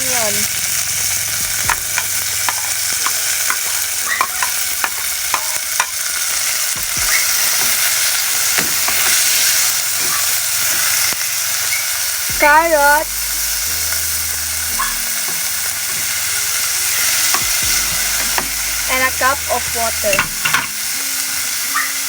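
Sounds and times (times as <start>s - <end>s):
food sizzling in a pot: 0.0s - 22.0s
spoon clinking against metal pot: 1.7s - 6.0s, 20.1s - 20.8s.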